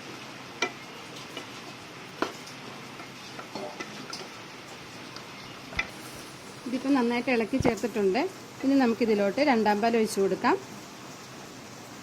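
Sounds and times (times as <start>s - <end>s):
low hiss: 0.0s - 12.0s
spoon stirring food in pan: 0.5s - 6.8s.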